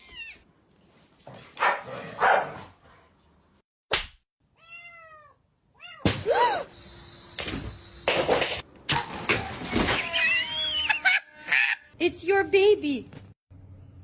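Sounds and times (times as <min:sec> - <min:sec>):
cat meowing: 0:04.6 - 0:06.0.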